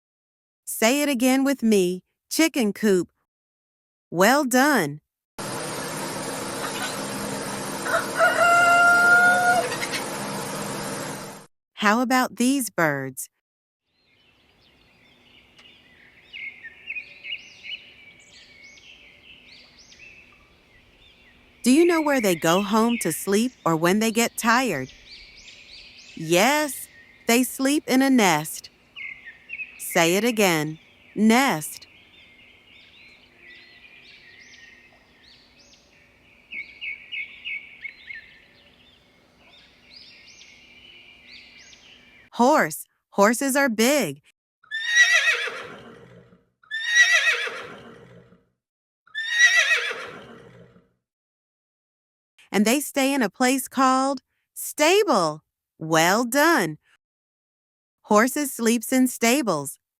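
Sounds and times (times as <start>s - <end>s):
small birds chirping: 13.9s - 42.7s.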